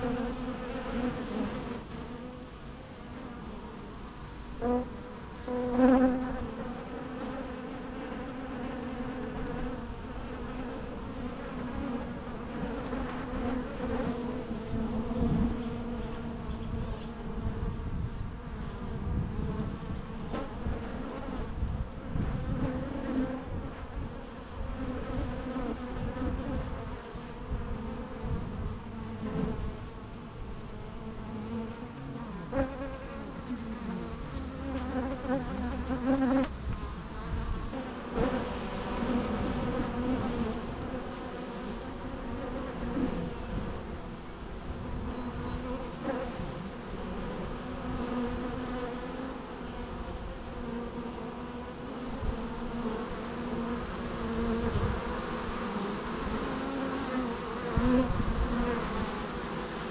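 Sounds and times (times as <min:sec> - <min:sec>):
bee buzzing close by: 0:00.0 - 0:59.9
bees buzzing: 0:00.0 - 0:59.9.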